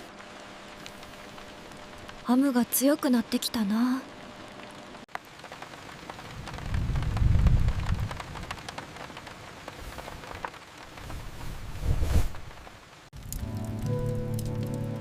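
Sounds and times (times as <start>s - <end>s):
rain falling: 0.0s - 15.0s
thunder rumbling: 6.2s - 8.7s.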